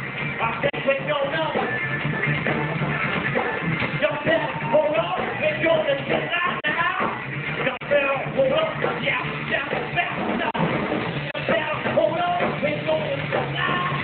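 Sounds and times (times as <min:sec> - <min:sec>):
bass guitar: 0:00.0 - 0:14.0
drums: 0:00.0 - 0:14.0.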